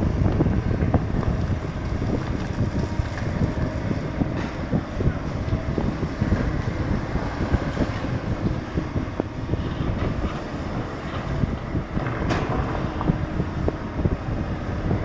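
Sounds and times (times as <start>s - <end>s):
excavator diesel engine running: 0.0s - 15.0s
wind buffeting microphone: 0.0s - 15.0s.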